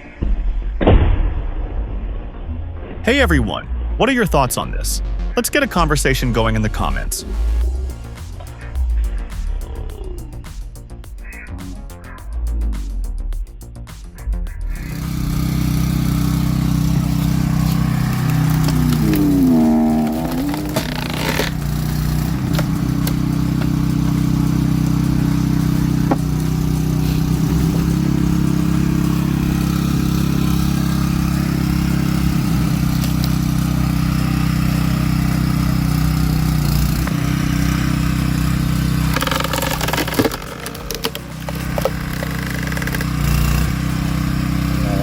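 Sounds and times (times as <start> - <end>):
engine running steadily: 5.2 - 10.4, 14.6 - 45.0.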